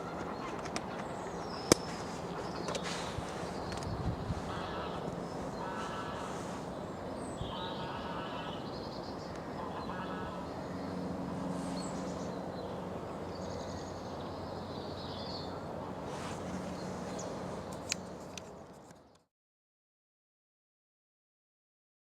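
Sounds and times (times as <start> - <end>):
birds chirping and twittering: 0.0 - 19.2
low steady drone: 1.1 - 18.7.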